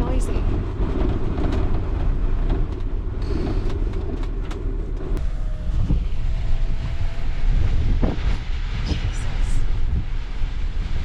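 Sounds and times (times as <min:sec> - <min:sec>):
wind buffeting a campervan: 0:00.0 - 0:11.0
rattles and knocks: 0:00.4 - 0:05.2.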